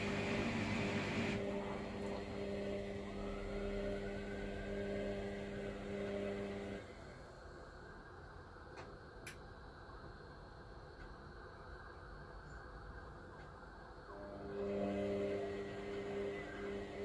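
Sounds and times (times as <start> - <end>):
washer-dryer motor hum: 0.0 - 17.0.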